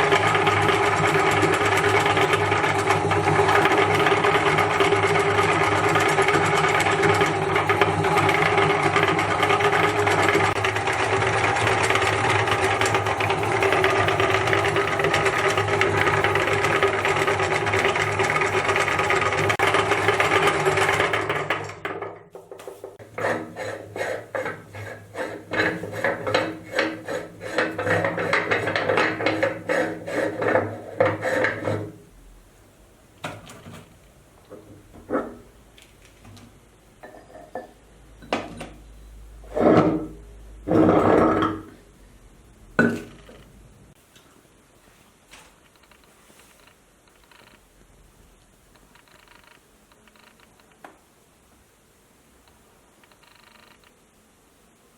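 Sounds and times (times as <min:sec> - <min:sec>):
meat grinder motor humming: 0:00.0 - 0:21.8.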